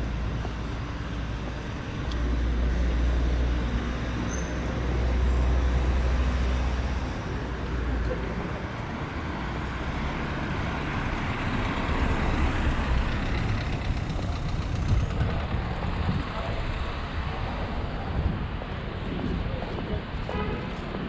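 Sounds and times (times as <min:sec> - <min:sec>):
busy street traffic: 0:00.0 - 0:21.0
heavy vehicle engine rumbling: 0:00.0 - 0:21.0.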